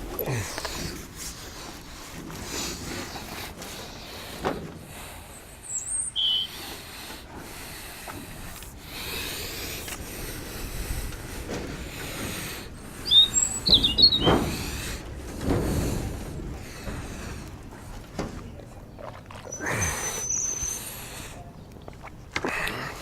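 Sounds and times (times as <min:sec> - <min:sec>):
small birds chirping: 0:05.0 - 0:11.0, 0:12.0 - 0:15.1, 0:18.8 - 0:23.0
scrubbing on glass panes: 0:08.2 - 0:23.0.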